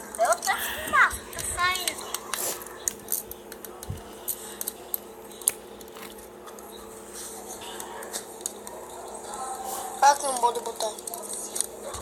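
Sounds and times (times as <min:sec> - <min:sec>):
wood bonfire crackling and popping: 0:10.0 - 0:12.0.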